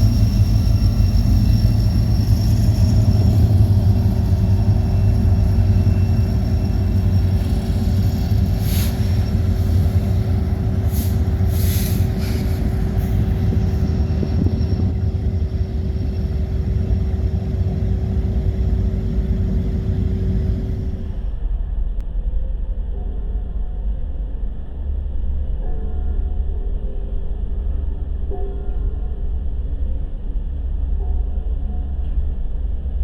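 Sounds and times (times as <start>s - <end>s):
freight train rumbling past: 0.0s - 22.9s
constant whine: 0.0s - 33.0s.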